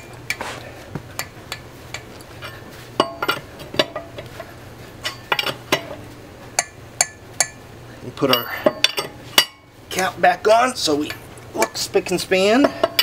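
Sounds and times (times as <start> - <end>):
wrench clinking on lug nuts: 1.2 - 4.2, 5.0 - 6.0, 8.2 - 9.7, 12.6 - 13.0.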